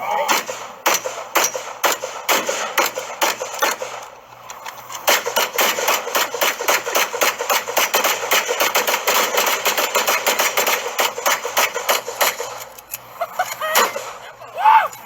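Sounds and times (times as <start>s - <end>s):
rapid gunfire: 0.3s - 4.0s, 5.0s - 12.6s.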